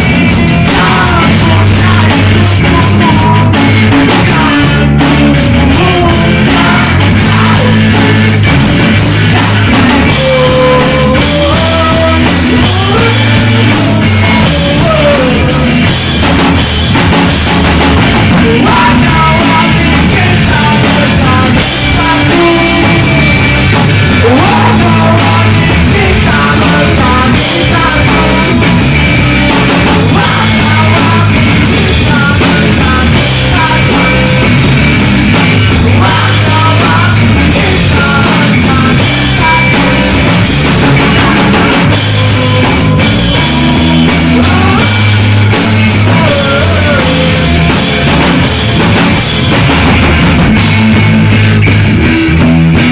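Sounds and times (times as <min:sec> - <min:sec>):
person singing: 0:00.0 - 0:49.8
drum kit: 0:00.0 - 0:52.9
guitars: 0:00.0 - 0:52.9.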